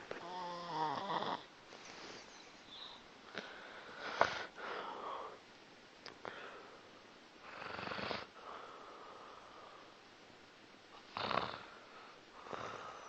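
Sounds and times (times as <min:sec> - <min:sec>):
pet snoring: 0:00.2 - 0:01.5, 0:07.4 - 0:08.3, 0:11.0 - 0:11.8.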